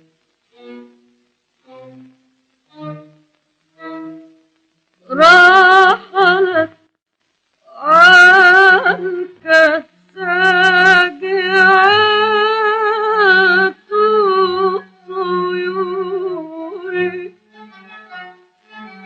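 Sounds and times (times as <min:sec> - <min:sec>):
woman singing: 0:05.0 - 0:06.8, 0:07.6 - 0:17.4.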